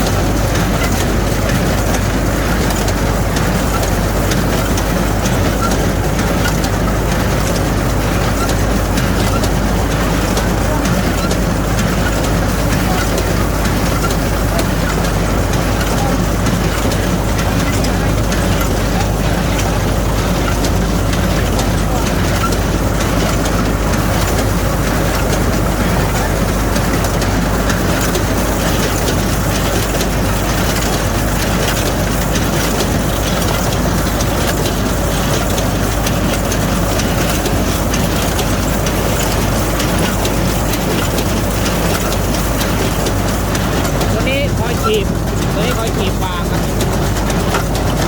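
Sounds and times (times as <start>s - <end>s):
hay baler engine drone: 0.0s - 48.0s
mechanical clatter: 0.0s - 48.0s.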